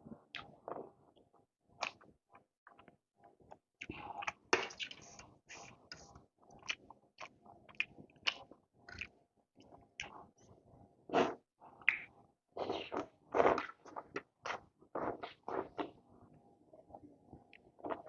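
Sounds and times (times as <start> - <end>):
chewing with wet mouth smacks: 6.5 - 10.2.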